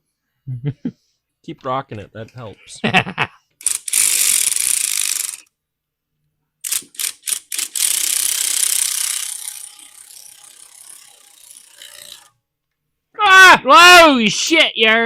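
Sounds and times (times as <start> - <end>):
ratchet wrench clicking: 3.6 - 5.5, 6.6 - 12.4.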